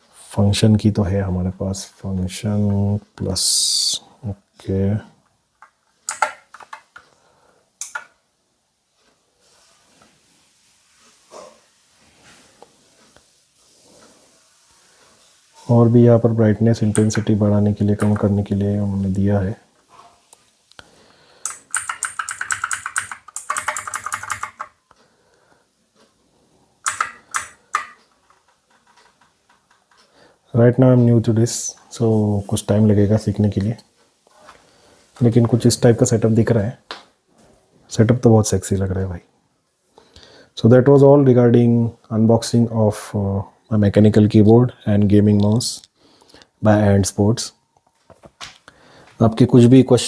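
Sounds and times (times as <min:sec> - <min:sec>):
keyboard key clicks: 0:06.1 - 0:06.8, 0:21.5 - 0:24.7, 0:26.9 - 0:28.0.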